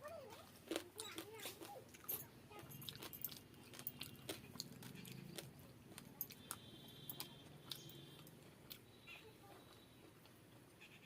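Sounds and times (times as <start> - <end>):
person chewing: 0.4 - 10.4.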